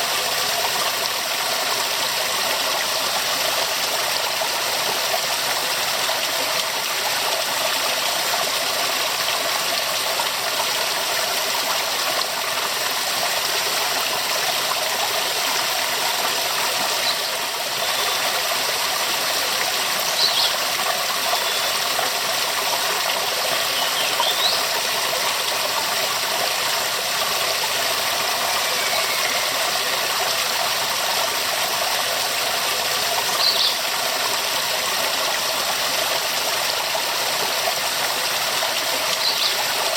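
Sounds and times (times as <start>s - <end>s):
waterfall rushing: 21.4s - 39.9s.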